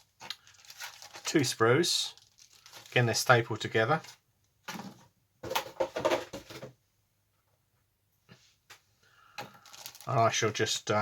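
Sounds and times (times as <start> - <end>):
plastic bags crinkling: 0.0 - 4.0, 9.2 - 10.7.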